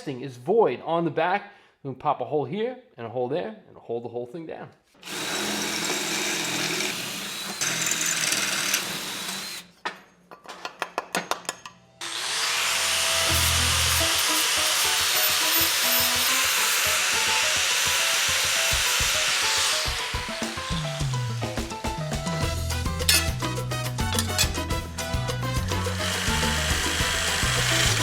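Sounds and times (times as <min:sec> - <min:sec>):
power drill boring through steel: 0:05.0 - 0:09.7, 0:12.0 - 0:21.8, 0:25.6 - 0:28.0
background music: 0:12.9 - 0:28.0.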